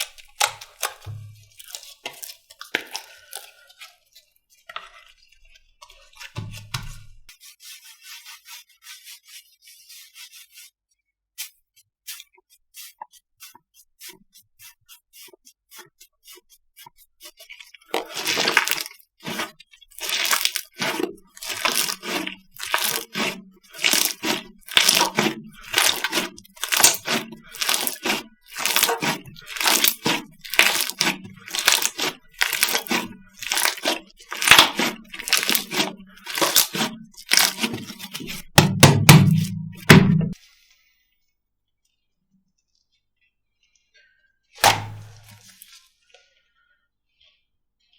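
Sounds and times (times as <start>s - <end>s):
slime crackling and popping: 0.0s - 3.6s, 18.0s - 40.0s.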